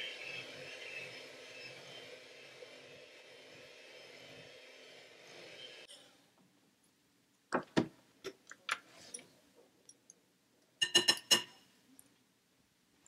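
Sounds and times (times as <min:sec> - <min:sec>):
utensils knocking against bowls: 0:10.8 - 0:11.6.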